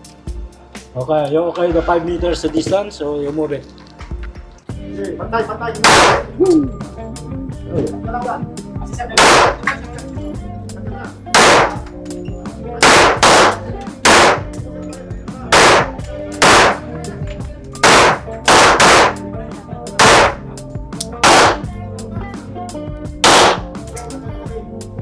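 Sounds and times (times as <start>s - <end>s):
background music: 0.0s - 25.0s
handgun shots ringing indoors: 5.9s - 6.3s, 9.2s - 9.7s, 11.4s - 11.9s, 12.8s - 14.6s, 15.6s - 16.8s, 17.8s - 19.2s, 20.0s - 20.4s, 21.2s - 21.7s, 23.2s - 23.7s.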